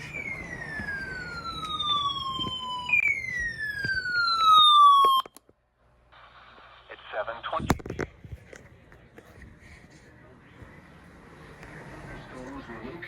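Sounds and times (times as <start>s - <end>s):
electronic emergency alert tone: 0.0s - 5.3s.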